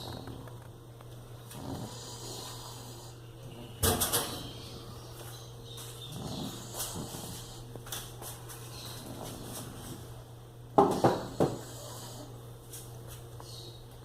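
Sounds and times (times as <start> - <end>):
dog snoring: 0.0 - 0.7, 1.4 - 4.8, 6.0 - 7.7, 8.7 - 10.1, 11.0 - 12.4.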